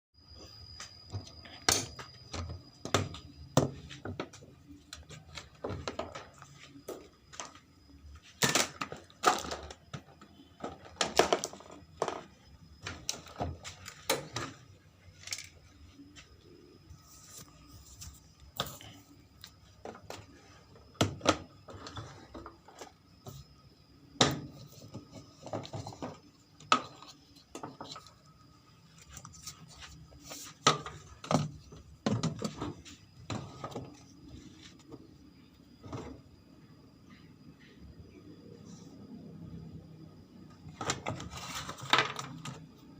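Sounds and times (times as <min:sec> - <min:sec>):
clatter of tools and parts: 0:08.3 - 0:15.8.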